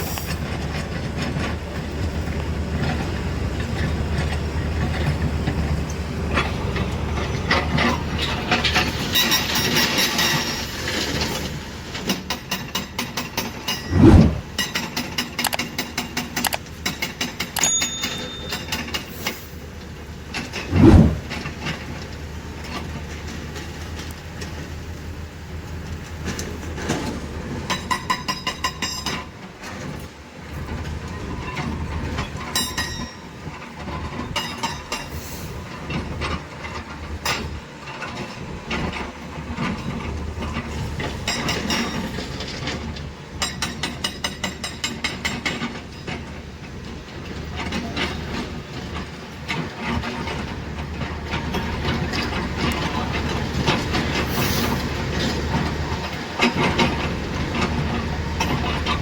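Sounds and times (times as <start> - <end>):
diesel engine droning: 0.0 - 12.3, 13.4 - 27.7, 45.7 - 59.0
heavy thump: 20.7 - 21.3.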